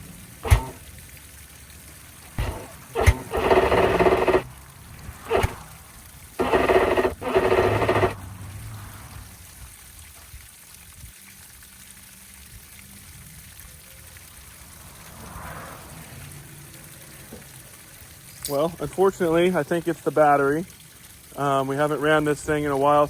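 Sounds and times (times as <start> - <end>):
water trickling: 0.0 - 3.4, 8.2 - 23.0
electric starter cranking: 0.4 - 0.9, 2.4 - 8.3.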